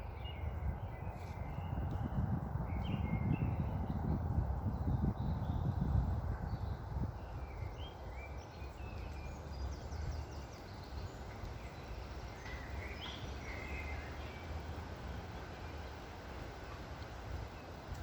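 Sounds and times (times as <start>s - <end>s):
small birds chirping: 0.0s - 14.7s
wind rumbling: 0.0s - 18.0s.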